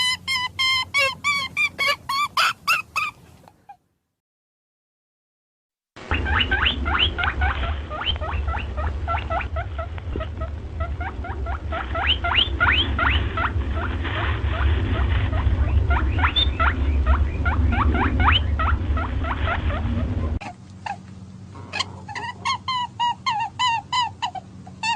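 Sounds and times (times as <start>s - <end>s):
rabbit squeaking: 0.0s - 3.8s, 6.0s - 24.9s
steady low hum: 6.0s - 24.9s.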